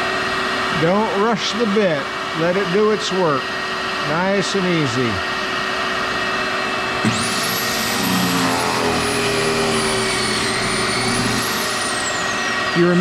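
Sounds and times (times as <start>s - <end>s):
steady background hum: 0.0s - 13.0s
drill motor high whine: 6.2s - 13.0s.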